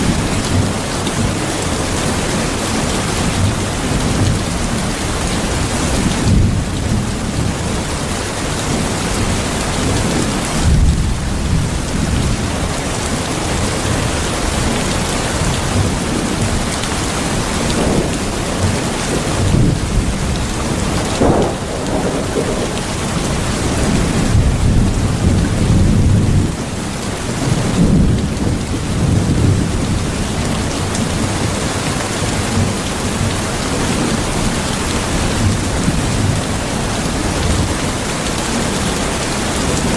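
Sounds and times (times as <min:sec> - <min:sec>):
heavy rain: 0:00.0 - 0:39.9
rolling thunder rumbles: 0:08.7 - 0:26.7, 0:27.4 - 0:31.7.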